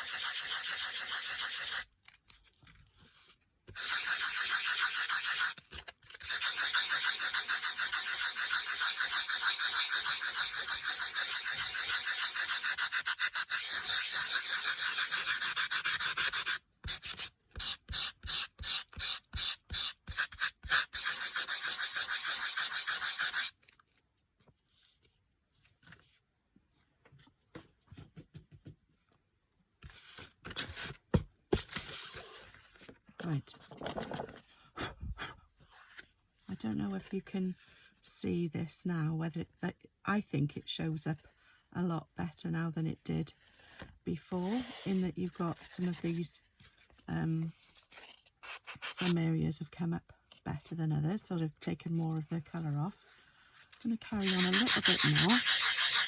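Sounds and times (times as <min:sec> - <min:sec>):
sanding block rubbing cardstock: 0:00.0 - 0:01.8, 0:03.7 - 0:23.5, 0:44.5 - 0:45.1, 0:53.8 - 0:56.0.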